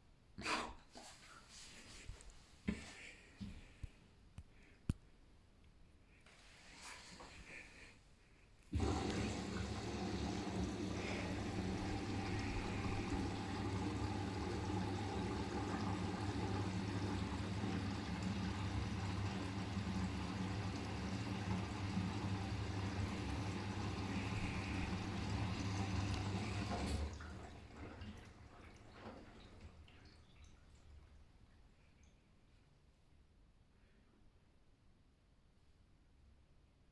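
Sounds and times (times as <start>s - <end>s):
washing machine water rushing: 8.7s - 31.2s.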